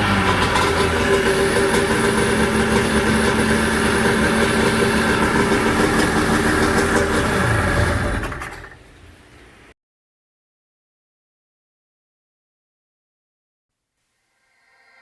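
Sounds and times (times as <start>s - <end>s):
jet ski engine running: 0.0s - 8.8s.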